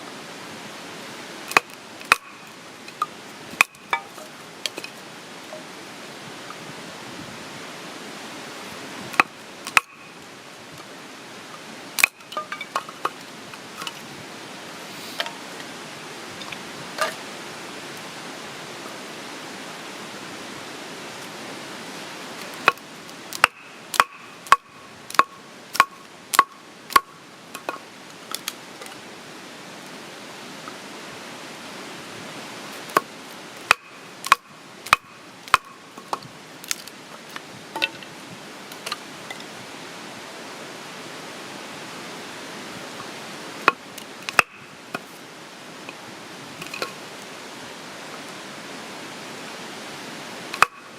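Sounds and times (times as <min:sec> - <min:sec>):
steady hiss: 0:00.0 - 0:50.9
sharp chopping knocks: 0:01.5 - 0:02.4, 0:09.2 - 0:10.0, 0:12.0 - 0:12.2, 0:23.4 - 0:27.1, 0:33.7 - 0:35.7, 0:43.7 - 0:44.6.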